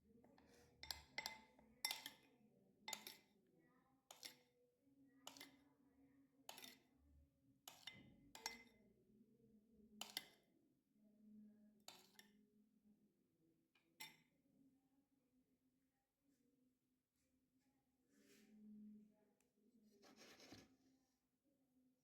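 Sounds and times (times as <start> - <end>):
utensil clinking against dishes: 0.8 - 2.2, 2.9 - 3.3, 7.7 - 8.7.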